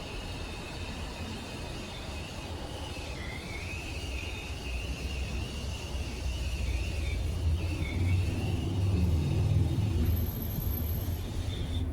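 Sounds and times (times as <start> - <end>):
low vehicle rumble: 5.2 - 11.9.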